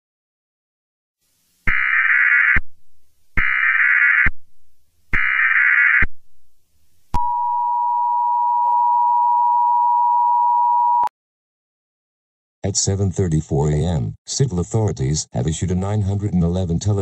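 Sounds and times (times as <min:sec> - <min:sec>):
digital data bursts screeching: 0:01.7 - 0:02.6, 0:03.4 - 0:04.3, 0:05.1 - 0:06.1.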